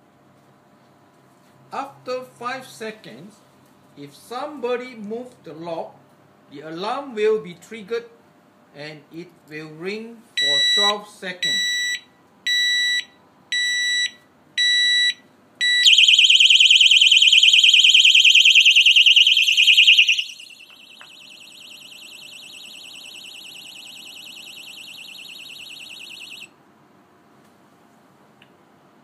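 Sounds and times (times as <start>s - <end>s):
short arming beeps: 15.8s - 26.5s
warbling alarm siren: 15.8s - 26.5s.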